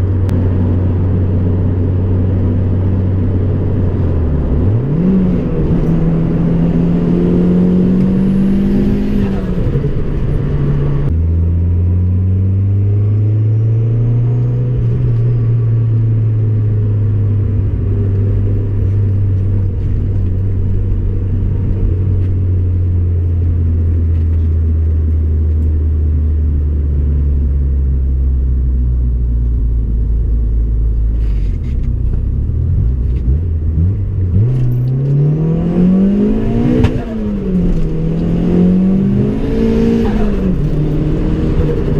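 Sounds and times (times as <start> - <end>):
turbocharged car engine revving: 0.0 - 22.1, 32.5 - 41.9.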